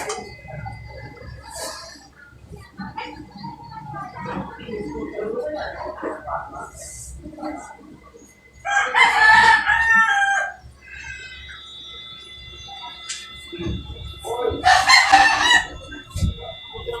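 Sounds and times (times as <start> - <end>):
rooster crowing: 8.6 - 11.6, 14.6 - 16.9.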